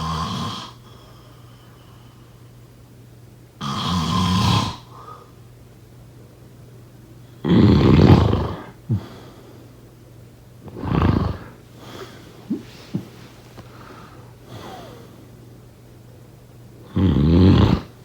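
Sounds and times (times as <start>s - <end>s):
person snoring: 0.0s - 0.8s, 7.4s - 8.7s, 10.7s - 11.6s, 16.9s - 18.0s.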